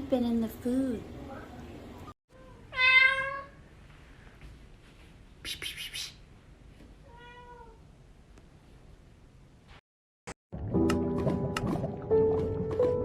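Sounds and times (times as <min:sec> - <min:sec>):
cat meowing: 0:02.3 - 0:03.6, 0:07.0 - 0:07.8.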